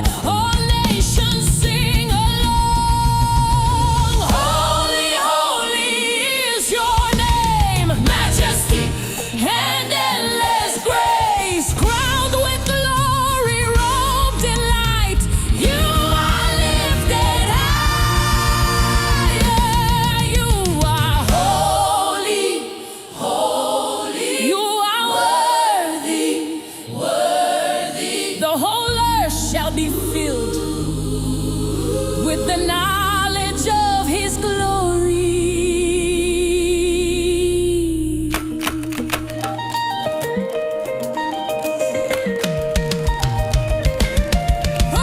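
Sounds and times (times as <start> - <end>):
voices singing gospel: 0.0 - 38.0
bass and steady beat: 0.1 - 4.9, 7.2 - 9.0, 11.8 - 21.7
low bass chords: 12.0 - 21.8, 29.0 - 38.4.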